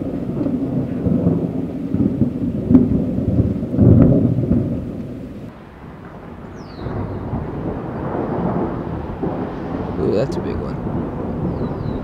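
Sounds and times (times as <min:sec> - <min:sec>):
sharp thunder crack: 0:00.0 - 0:12.0
thunder rumbling: 0:00.0 - 0:12.0.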